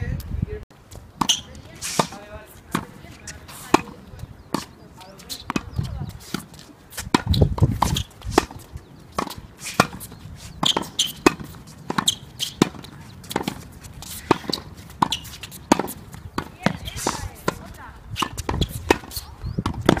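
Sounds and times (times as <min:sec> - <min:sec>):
tennis balls bouncing on court: 0:00.9 - 0:20.0
tennis balls hit by rackets: 0:00.9 - 0:20.0.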